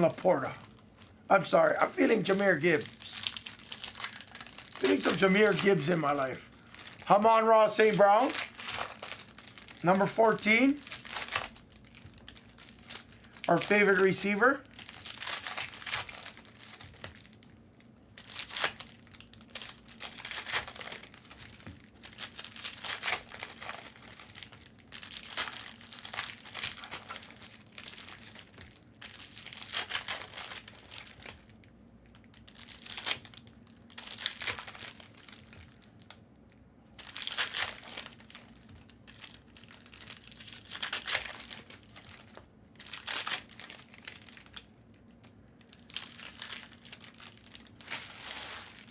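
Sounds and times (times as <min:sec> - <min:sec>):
foil wrappers crinkling and tearing: 0:00.0 - 0:48.9.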